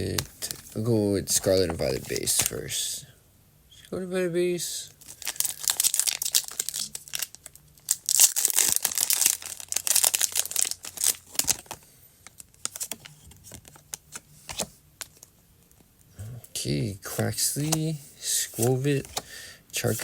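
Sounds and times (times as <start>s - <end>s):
foil pack crinkling and tearing: 5.0s - 14.0s.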